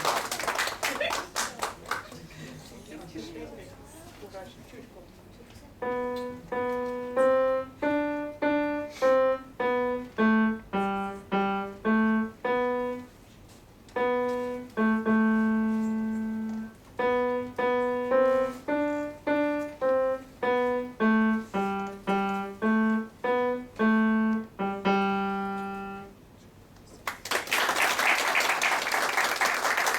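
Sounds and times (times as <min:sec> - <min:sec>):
solo piano melody: 0:05.8 - 0:26.4.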